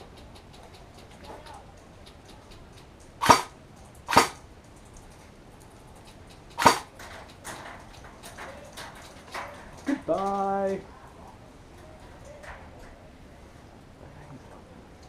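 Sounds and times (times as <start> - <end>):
airsoft gun shots: 3.2 - 4.4, 6.6 - 6.9.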